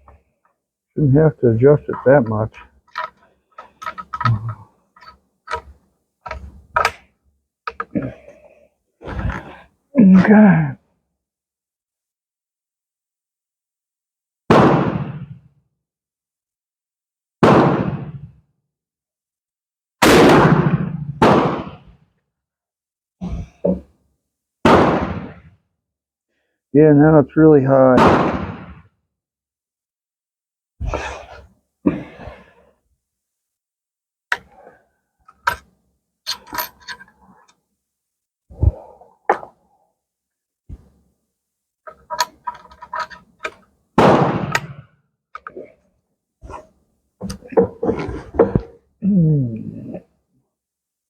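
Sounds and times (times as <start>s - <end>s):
rifle shots: 20.0s - 21.8s, 24.7s - 25.3s, 28.0s - 28.6s, 44.0s - 44.7s.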